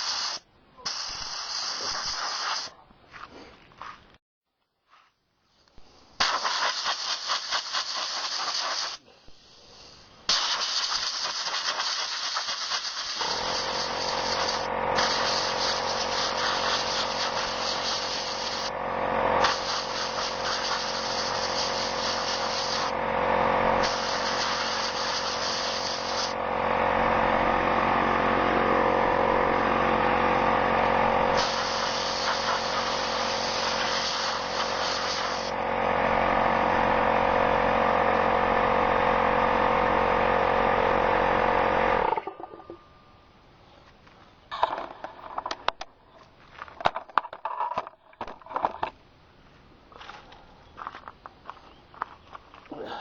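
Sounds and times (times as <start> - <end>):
compressed air hissing bursts: 0.0 - 2.7, 5.8 - 18.8, 19.4 - 23.0, 23.8 - 26.4, 31.2 - 35.6
air compressor motor running: 10.3 - 42.8.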